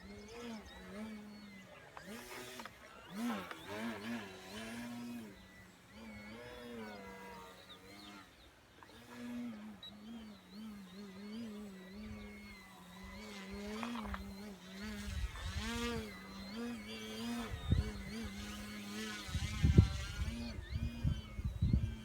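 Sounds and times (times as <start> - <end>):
model plane propeller droning: 0.0 - 22.0
wind rumbling on microphone: 12.0 - 16.3, 17.2 - 22.0.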